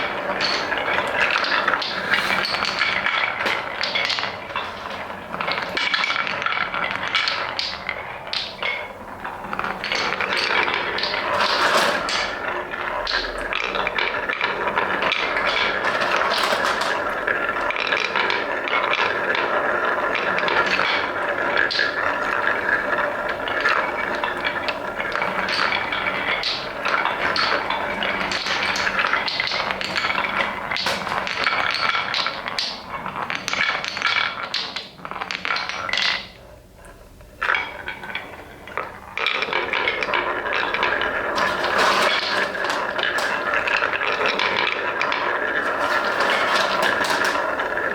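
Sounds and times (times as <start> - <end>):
wooden balls rolling down track: 0.0 - 47.9.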